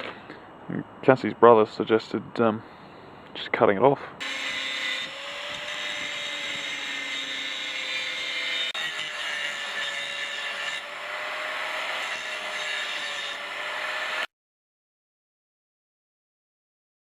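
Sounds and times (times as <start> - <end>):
power tool cutting pipe: 4.2 - 14.3.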